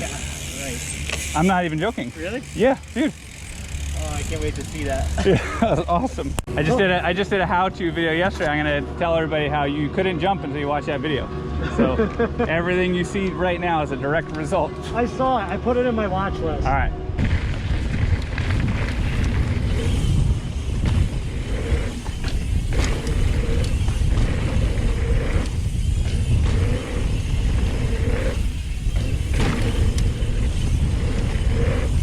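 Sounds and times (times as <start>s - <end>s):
bike knocking and clattering: 0.0s - 2.6s, 17.2s - 32.0s
bike tyres rumbling on dirt: 0.0s - 5.6s, 17.2s - 32.0s
wind over microphone: 16.3s - 32.0s.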